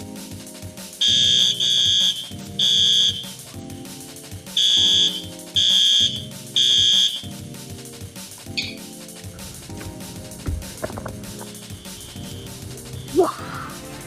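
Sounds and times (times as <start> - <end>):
fire alarm beeps: 1.0 - 3.3, 4.6 - 7.2.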